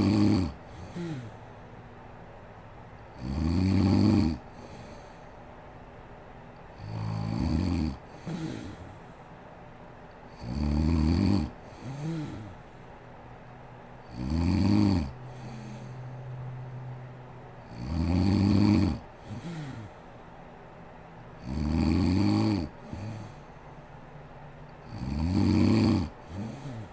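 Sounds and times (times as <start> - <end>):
woman snoring: 0.0 - 1.5, 3.2 - 5.2, 6.8 - 9.0, 10.3 - 12.6, 14.1 - 16.0, 17.7 - 20.0, 21.4 - 23.4, 24.8 - 26.9.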